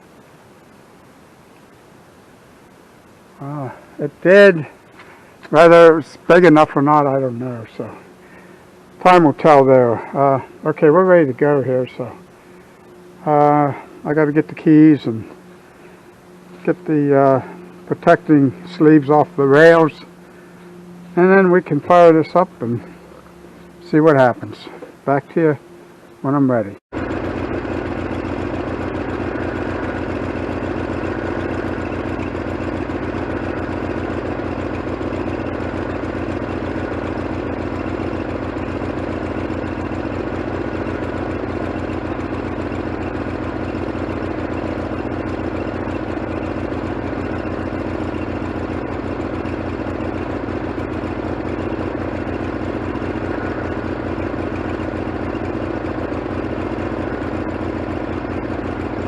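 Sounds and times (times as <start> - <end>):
sawmill engine idling: 0.0 - 59.0.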